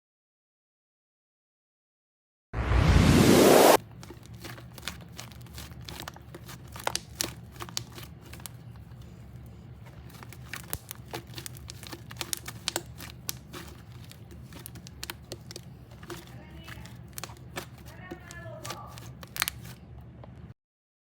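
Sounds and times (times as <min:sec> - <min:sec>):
slime squeezed and stretched: 0:03.7 - 0:09.1, 0:09.8 - 0:19.8
low steady hum: 0:03.7 - 0:20.5.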